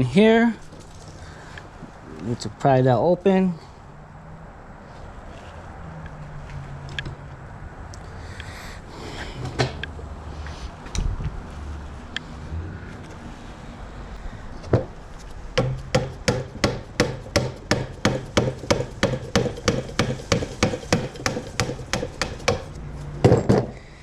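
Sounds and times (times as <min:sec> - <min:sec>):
hammer striking metal: 0:15.6 - 0:22.8.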